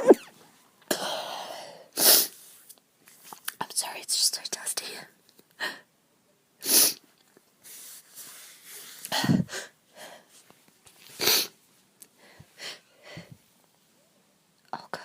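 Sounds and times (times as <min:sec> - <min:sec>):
woman sneezing: 0:00.0 - 0:00.3
woman breathing: 0:12.2 - 0:13.4.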